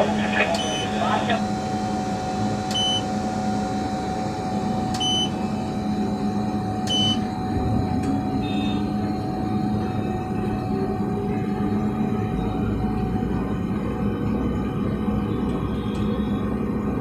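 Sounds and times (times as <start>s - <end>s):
crane cab machine hum: 0.0s - 17.0s.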